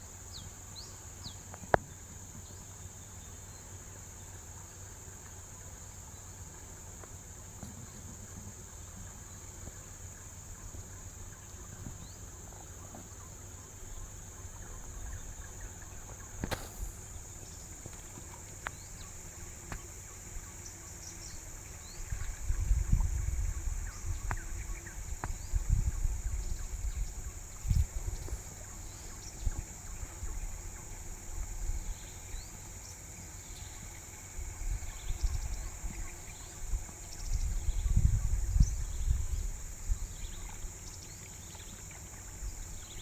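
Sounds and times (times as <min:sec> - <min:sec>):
insects droning: 0:00.0 - 0:43.0
sharp click: 0:16.4 - 0:17.2.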